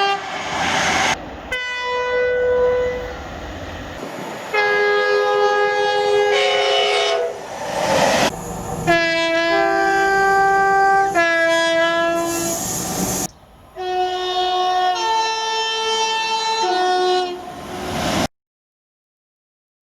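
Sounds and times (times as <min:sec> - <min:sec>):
two-tone train air horns: 0:00.0 - 0:00.3, 0:01.5 - 0:03.2, 0:04.5 - 0:07.5, 0:08.8 - 0:17.6
rushing train noise: 0:00.0 - 0:18.3.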